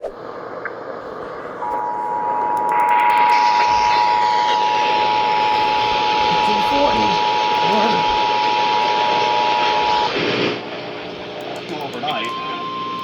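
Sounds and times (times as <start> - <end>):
radio hiss: 0.0 - 13.0
two-tone alarm signal: 1.6 - 10.2, 12.0 - 13.0.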